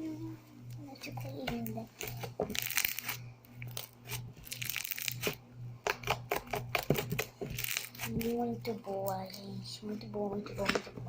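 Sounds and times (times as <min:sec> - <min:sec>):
slime popping and squishing: 0:02.0 - 0:08.3.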